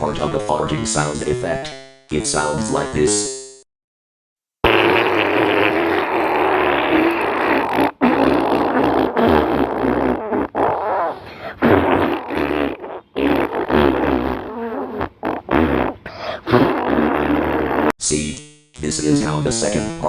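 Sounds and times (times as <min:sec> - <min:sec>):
farting sound effect: 0:04.6 - 0:18.0.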